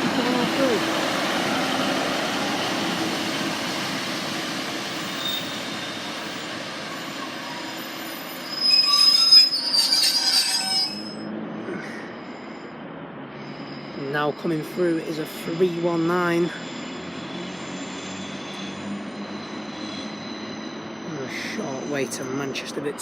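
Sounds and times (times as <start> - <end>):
train running noise: 0.0 - 23.0
high-pitched wheel squeal: 4.5 - 11.4, 13.4 - 22.6.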